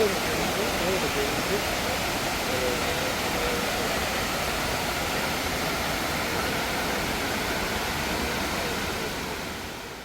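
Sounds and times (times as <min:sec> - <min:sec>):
faint voices: 0:00.0 - 0:10.0.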